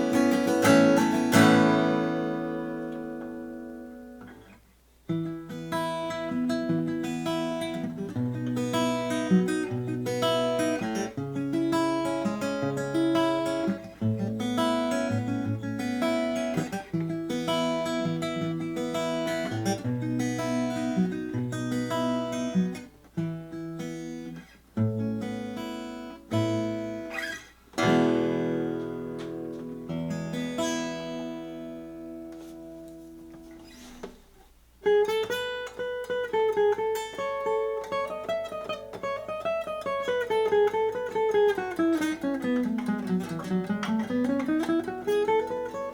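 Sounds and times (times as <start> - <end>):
guitar chord ringing: 0.0 - 4.5, 27.8 - 32.5
acoustic guitar picked tune: 0.0 - 45.9.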